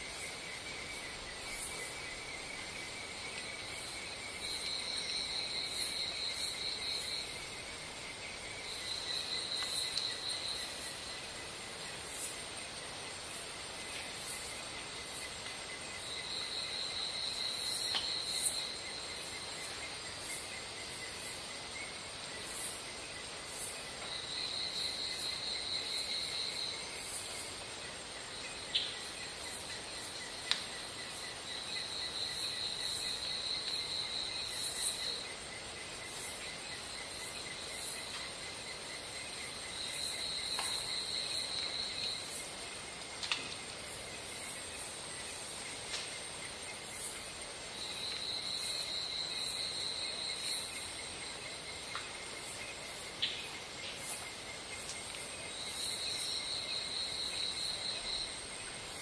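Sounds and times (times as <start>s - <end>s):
insects buzzing: 0.0s - 59.0s
faint clicks: 30.4s - 30.8s, 43.0s - 43.6s.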